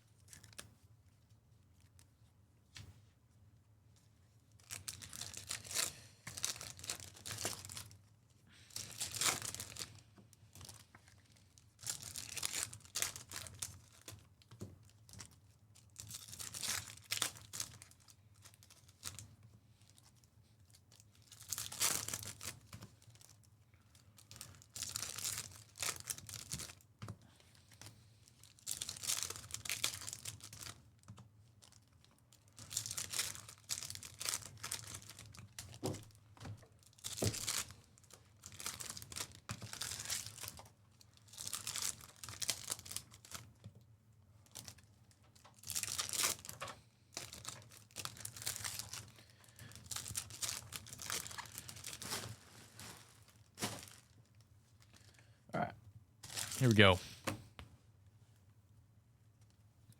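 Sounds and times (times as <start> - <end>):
card wrappers tearing and crinkling: 4.6 - 7.9, 8.7 - 10.0, 11.8 - 14.1, 16.0 - 19.2, 21.3 - 22.6, 28.6 - 30.8, 32.5 - 35.7, 36.9 - 40.6, 41.3 - 43.4, 45.6 - 49.1, 49.8 - 54.2.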